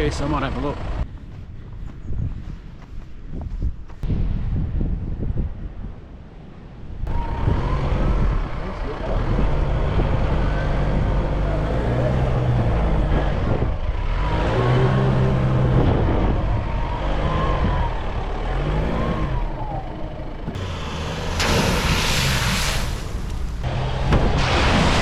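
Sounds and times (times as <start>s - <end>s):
vehicle engine revving: 7.1s - 25.0s
loud rushing noise: 20.6s - 25.0s.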